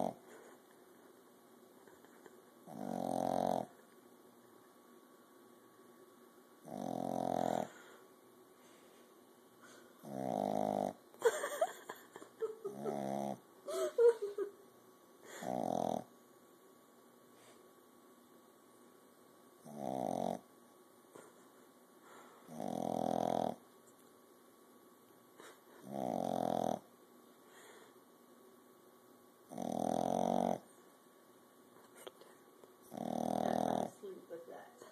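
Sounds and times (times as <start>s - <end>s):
puppy snoring: 0.0s - 0.6s, 1.8s - 3.8s, 6.6s - 8.0s, 9.6s - 11.1s, 12.5s - 13.5s, 15.2s - 16.2s, 19.6s - 20.6s, 22.1s - 23.7s, 25.4s - 26.9s, 29.4s - 30.8s, 32.8s - 34.2s.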